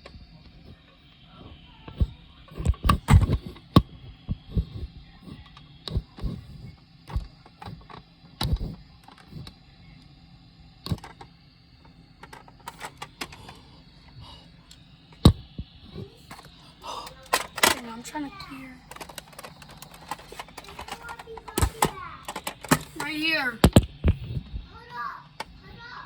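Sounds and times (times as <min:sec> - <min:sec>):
toy blaster clicks and knocks: 0:01.9 - 0:03.8, 0:10.9 - 0:11.3, 0:12.2 - 0:13.6, 0:16.2 - 0:24.2.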